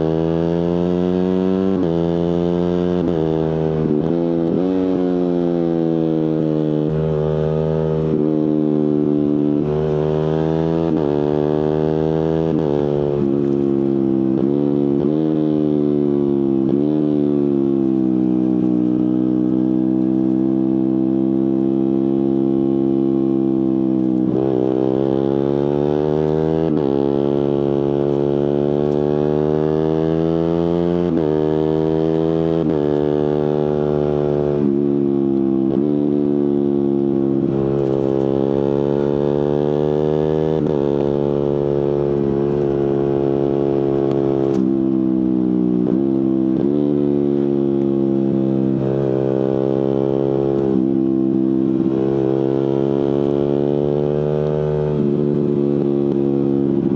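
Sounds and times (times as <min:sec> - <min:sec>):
motorcycle engine accelerating: 0:00.0 - 0:56.9.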